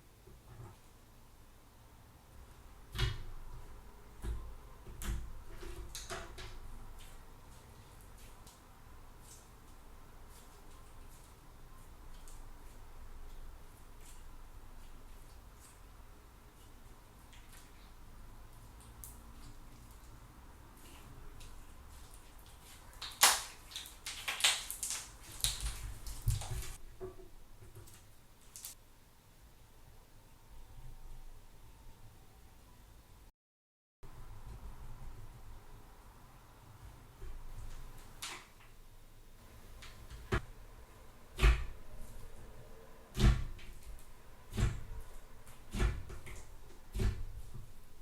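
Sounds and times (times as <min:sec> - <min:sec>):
slime popping and crackling: 0:22.0 - 0:26.8.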